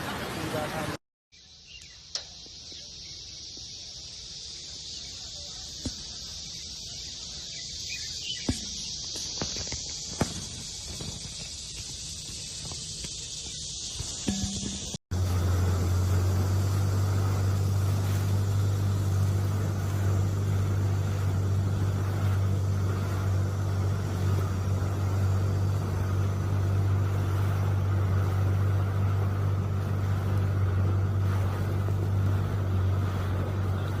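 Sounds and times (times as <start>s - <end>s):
engine running steadily: 7.8s - 34.0s.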